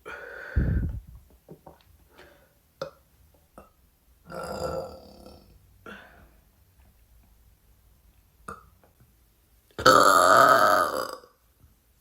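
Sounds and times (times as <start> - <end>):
woman burping: 3.6 - 6.2, 9.8 - 11.3.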